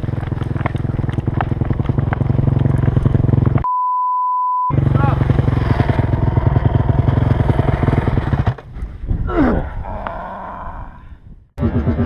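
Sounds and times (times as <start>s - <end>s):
dirt bike engine running: 0.0s - 3.7s, 4.7s - 8.8s, 11.6s - 12.0s
high beep tone: 3.7s - 4.8s.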